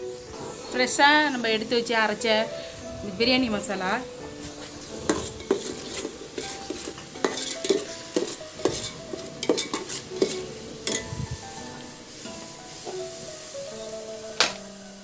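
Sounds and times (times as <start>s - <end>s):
light sizzle: 0.0s - 15.0s
spoon scraping metal pan: 3.6s - 13.2s.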